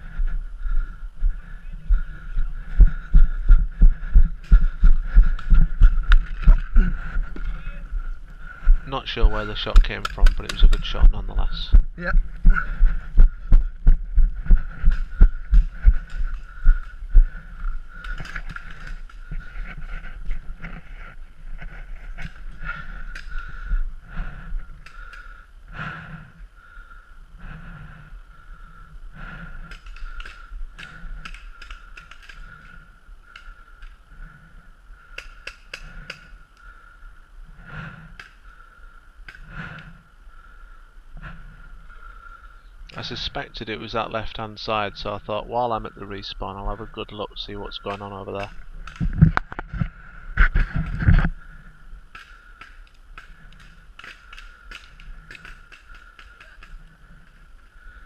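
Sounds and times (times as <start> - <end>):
sharp clicks: 9.6 - 11.2, 29.6 - 34.0, 35.1 - 36.7, 52.1 - 57.4.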